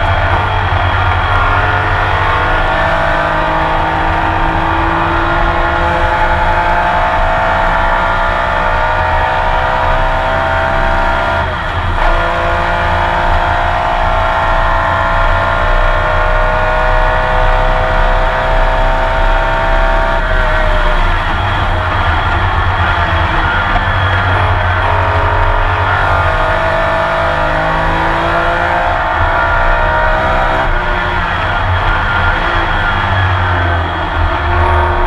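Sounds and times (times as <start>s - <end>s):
racing engine at full throttle: 0.0s - 35.0s.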